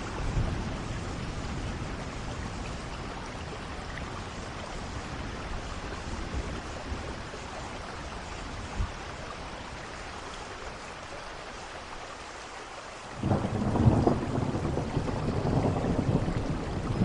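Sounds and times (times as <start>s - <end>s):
steady rain falling: 0.0s - 17.0s
loud rolling thunder: 13.2s - 17.0s.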